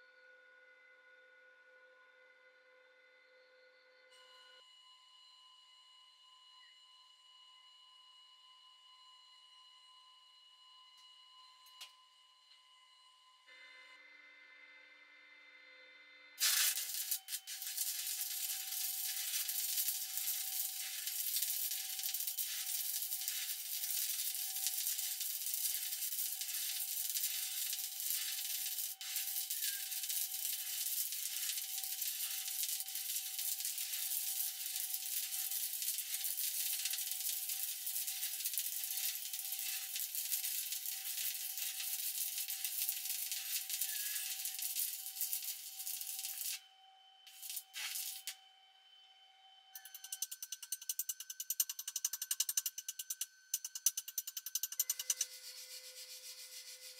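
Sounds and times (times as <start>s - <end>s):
welding arc crackling sizzle: 16.4s - 46.6s, 47.3s - 48.4s, 49.8s - 56.9s.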